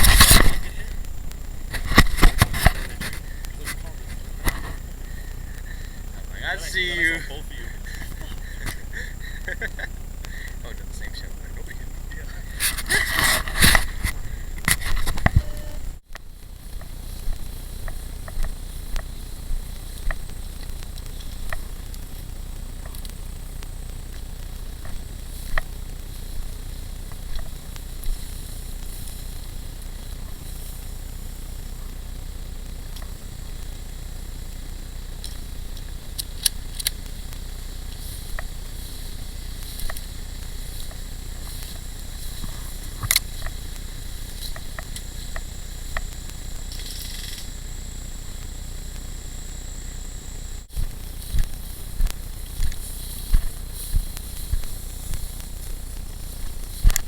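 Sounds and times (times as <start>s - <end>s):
microphone hiss and rumble: 0.0s - 57.0s
sharp snaps and clicks: 16.1s - 29.2s, 35.1s - 49.1s, 50.7s - 57.0s.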